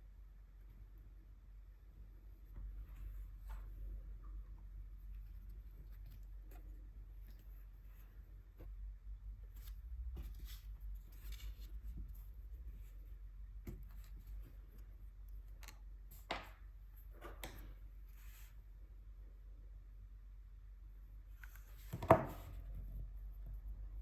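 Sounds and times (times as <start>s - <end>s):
soft brushing rustle: 2.6s - 4.1s, 4.9s - 14.9s, 18.0s - 18.7s
painting supplies tapping and clicking: 15.5s - 16.6s.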